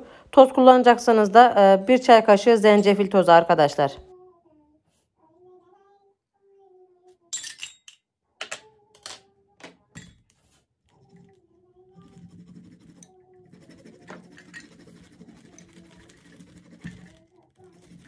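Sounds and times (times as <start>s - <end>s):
kitchen utensils clinking: 7.4s - 9.3s
ginger rasping on a grater: 12.0s - 18.0s.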